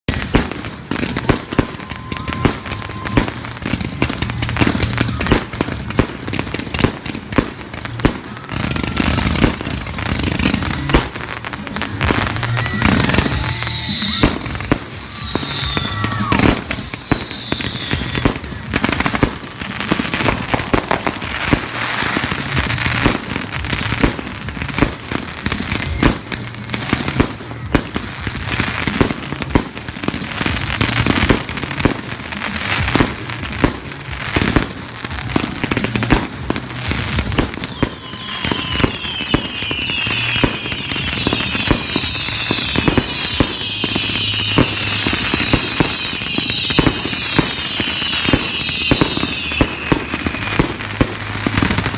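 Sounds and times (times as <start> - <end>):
fireworks bangs and crackles: 0.0 - 51.9
falling firework whistles: 1.0 - 3.6, 12.2 - 23.0, 37.0 - 51.9.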